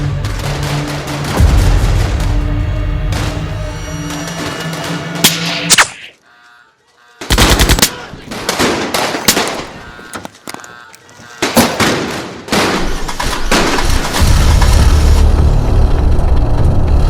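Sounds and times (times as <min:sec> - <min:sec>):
automatic gunfire: 0:07.3 - 0:10.1.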